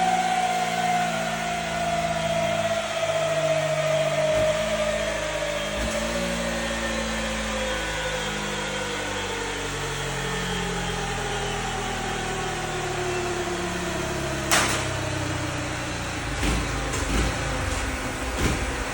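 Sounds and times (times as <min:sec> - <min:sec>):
low thumps: 0:16.0 - 0:18.9.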